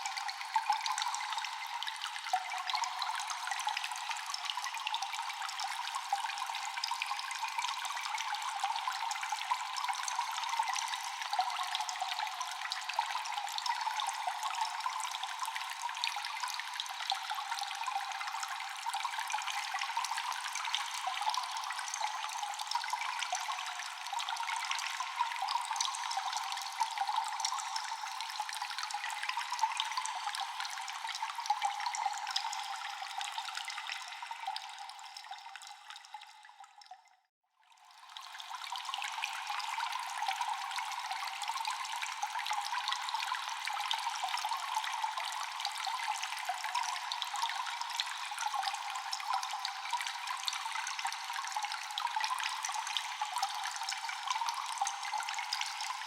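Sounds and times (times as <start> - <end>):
water dripping: 0.0 - 37.3
water trickling: 0.0 - 56.0.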